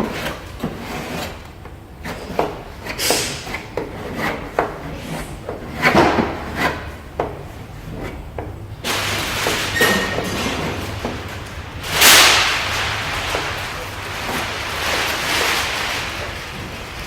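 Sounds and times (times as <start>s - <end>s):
spatula scraping filler on car panel: 0.0s - 8.3s.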